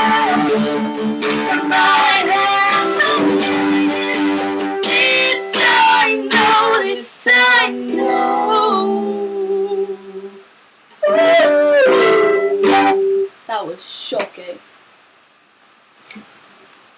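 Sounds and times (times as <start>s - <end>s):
strummed string instrument chords: 0.0s - 6.8s, 11.1s - 13.3s
person singing: 0.0s - 10.4s, 11.0s - 13.4s.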